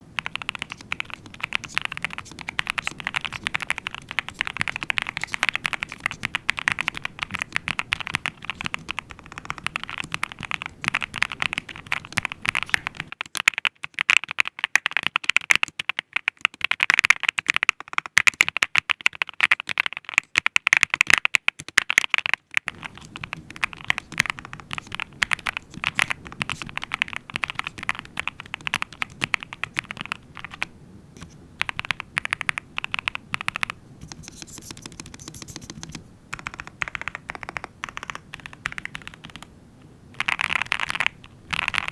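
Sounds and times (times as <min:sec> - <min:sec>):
mechanical keyboard typing: 0:00.0 - 0:39.5, 0:40.1 - 0:41.9
low background rumble: 0:34.9 - 0:41.9.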